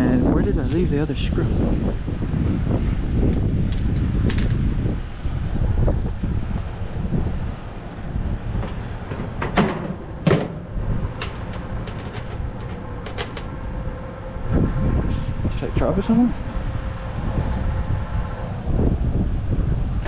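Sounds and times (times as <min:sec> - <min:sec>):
steady low rumble: 0:00.0 - 0:20.0
metal parts clinking and knocking: 0:08.7 - 0:13.6.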